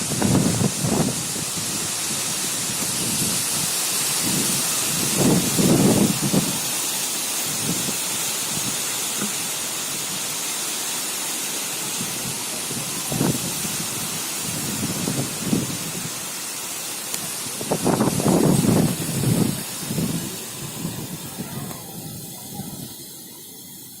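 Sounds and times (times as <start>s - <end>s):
thunder rumbling: 0.0s - 6.8s, 17.3s - 23.0s
heavy rain hissing: 0.0s - 24.0s.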